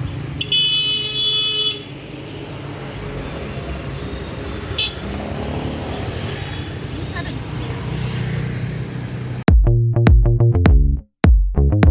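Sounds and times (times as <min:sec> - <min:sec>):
vehicle horn blast: 0:00.4 - 0:02.0, 0:04.8 - 0:05.1.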